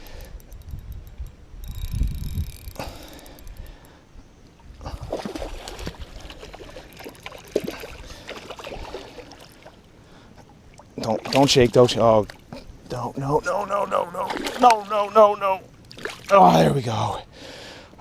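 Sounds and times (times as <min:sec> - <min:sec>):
fishing reel clicks: 0:00.0 - 0:04.0
water splashing and sloshing: 0:04.6 - 0:17.0.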